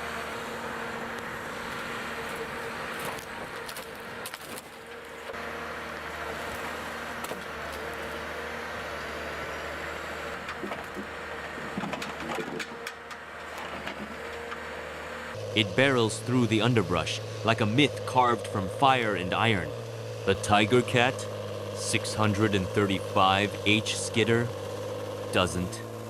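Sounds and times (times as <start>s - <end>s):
heavy machine engine running: 0.0s - 26.0s
metal knocks and clanks: 10.4s - 14.6s.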